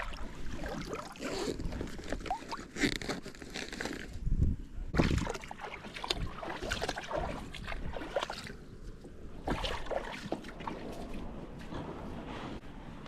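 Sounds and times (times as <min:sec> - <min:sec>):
paddle splashing water: 0:05.0 - 0:08.6, 0:09.4 - 0:11.3.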